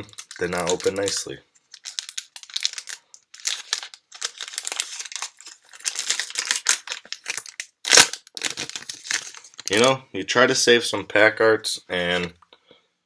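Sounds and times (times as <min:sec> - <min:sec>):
foil wrapper crinkling and tearing: 0:00.0 - 0:09.9.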